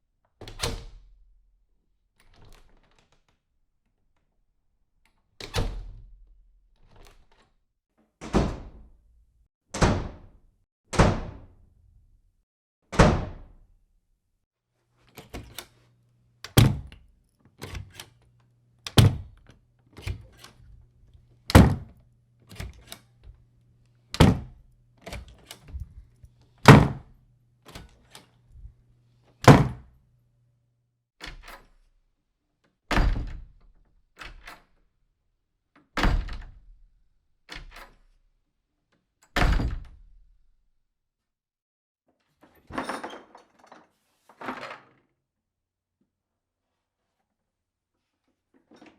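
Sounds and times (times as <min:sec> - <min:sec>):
door shutting thunks: 0:16.5 - 0:17.0, 0:18.9 - 0:19.4, 0:21.5 - 0:22.0, 0:24.2 - 0:24.6, 0:26.6 - 0:27.1, 0:29.4 - 0:29.9.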